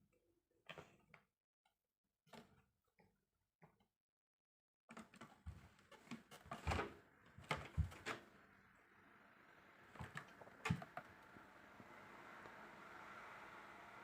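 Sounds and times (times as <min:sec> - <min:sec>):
soft knocks and thumps: 0:05.5 - 0:08.2
faint steady hiss: 0:07.2 - 0:14.0.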